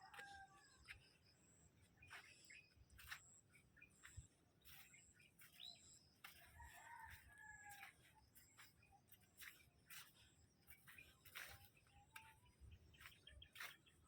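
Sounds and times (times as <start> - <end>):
faint rooster crowing: 0.0 - 1.3, 6.3 - 8.7.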